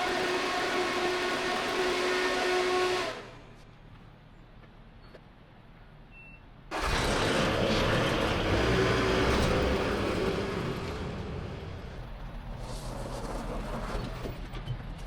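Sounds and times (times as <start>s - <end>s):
engine running: 6.7s - 12.6s.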